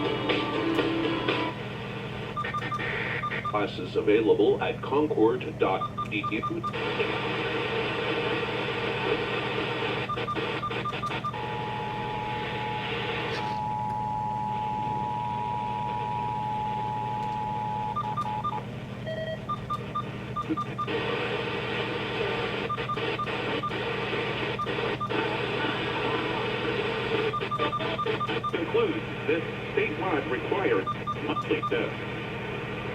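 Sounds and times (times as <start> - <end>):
radio static: 2.0 - 13.7, 20.5 - 32.9
two-tone attention signal: 2.4 - 3.6, 27.2 - 28.8.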